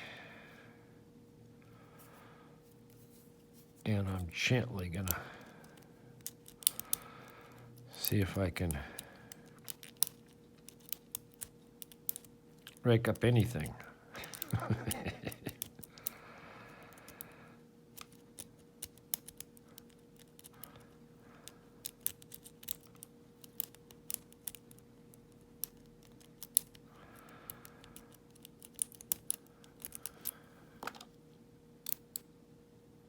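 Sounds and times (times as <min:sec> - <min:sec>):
lock pins setting: 0:04.8 - 0:16.2, 0:21.8 - 0:26.8, 0:27.5 - 0:31.1, 0:31.8 - 0:32.3
lock pick clicking and scraping: 0:04.9 - 0:12.8, 0:13.5 - 0:16.2, 0:18.0 - 0:20.8, 0:21.4 - 0:26.8, 0:27.5 - 0:31.0, 0:31.8 - 0:32.3.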